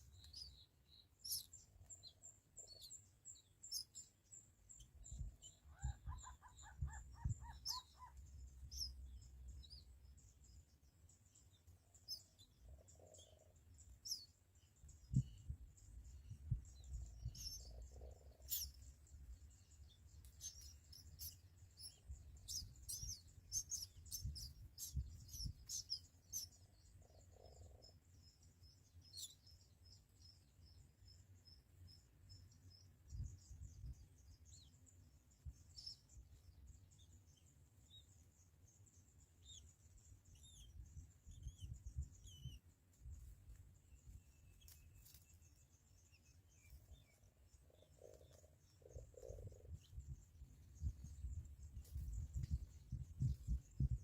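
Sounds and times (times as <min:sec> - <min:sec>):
small birds chirping: 0:00.0 - 0:54.0
faint low rumble: 0:45.5 - 0:54.0.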